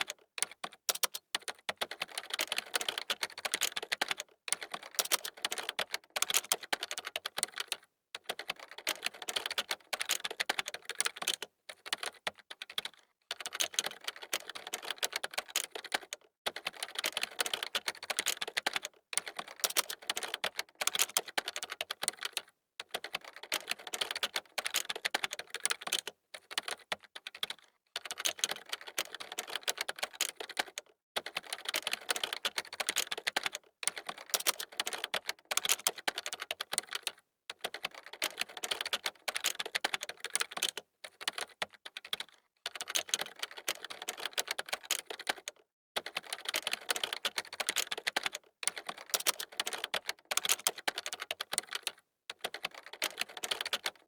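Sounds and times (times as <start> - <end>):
computer keyboard typing: 0.0 - 54.0.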